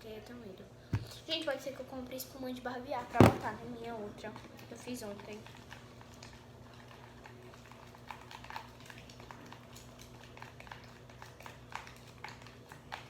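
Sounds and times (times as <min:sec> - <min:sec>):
slime being stirred: 0:05.0 - 0:13.0.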